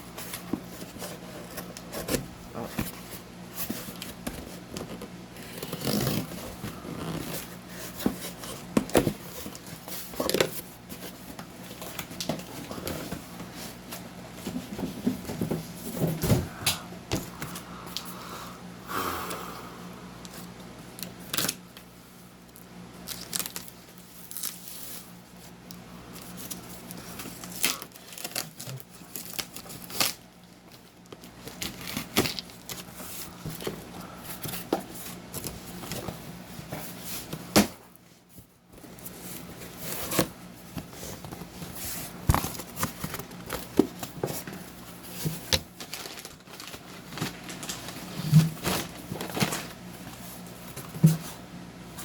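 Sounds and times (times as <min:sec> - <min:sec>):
paper rustling and tearing: 0:45.3 - 0:49.8.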